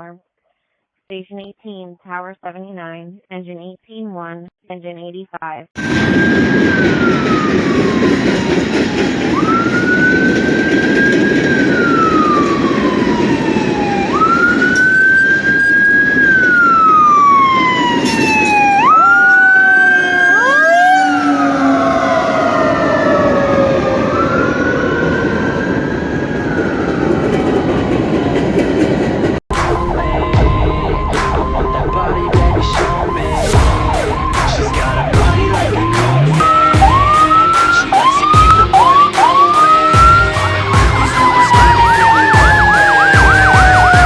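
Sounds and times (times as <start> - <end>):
second siren with faster sweeps: 5.8 - 28.0, 29.5 - 44.0
fire truck siren wailing: 5.8 - 44.0
steady low rumble: 25.3 - 37.4.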